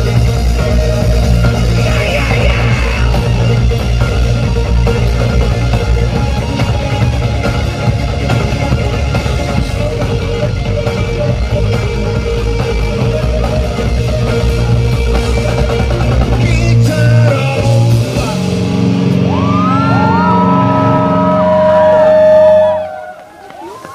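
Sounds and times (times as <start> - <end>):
rock band playing loudly: 0.0 - 22.8
distorted electric guitar: 0.0 - 23.0.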